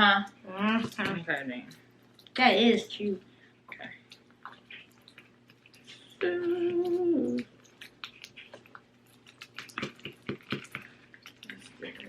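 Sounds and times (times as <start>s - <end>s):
slime squelching: 0.0s - 12.0s
person humming: 6.2s - 7.5s.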